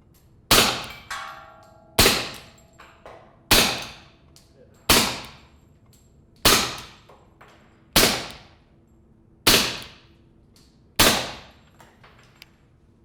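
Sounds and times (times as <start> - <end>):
suppressed pistol shots: 0.5 - 1.1, 2.0 - 2.5, 3.5 - 4.0, 4.9 - 5.4, 6.4 - 7.0, 8.0 - 8.5, 9.5 - 10.0, 11.0 - 11.6.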